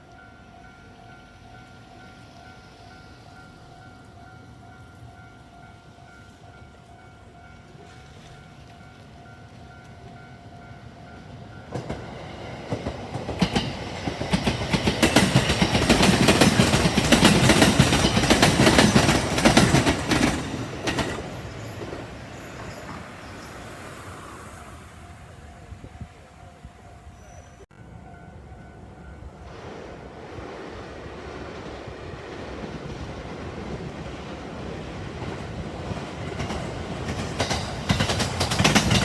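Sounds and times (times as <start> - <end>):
train wheels clattering over rails: 11.7 - 23.1, 31.1 - 39.0.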